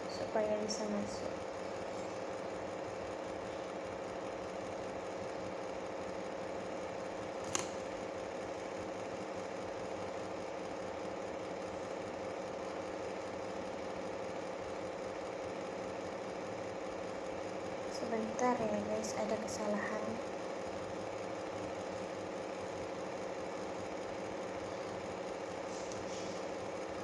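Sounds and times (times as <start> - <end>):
steady background hum: 0.0 - 27.0
sharp click: 7.4 - 7.8.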